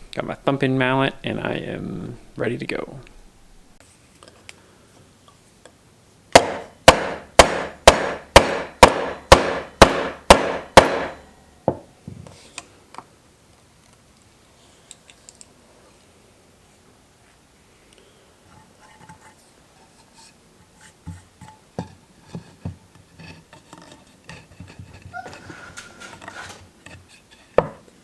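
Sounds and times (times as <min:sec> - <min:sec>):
mallet striking chisel into wood: 0:06.4 - 0:11.8, 0:27.6 - 0:27.8.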